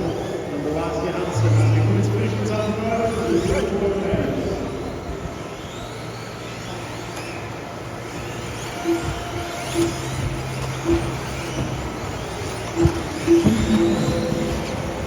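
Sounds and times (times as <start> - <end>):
rc car motors whining: 0.0 - 15.0.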